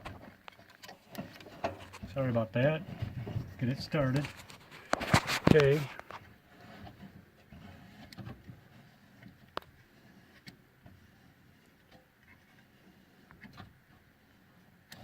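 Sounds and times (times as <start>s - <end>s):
handling noise: 1.2s - 6.3s.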